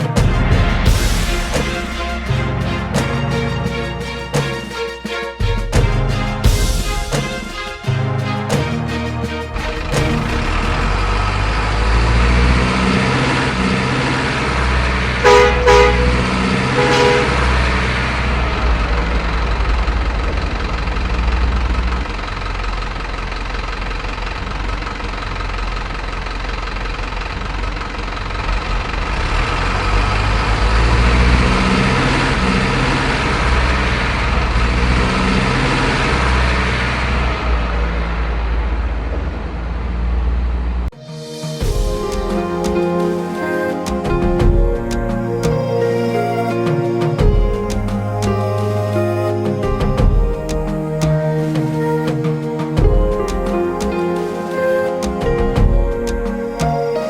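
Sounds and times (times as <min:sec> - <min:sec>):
horn toots: 0:00.0 - 0:19.4.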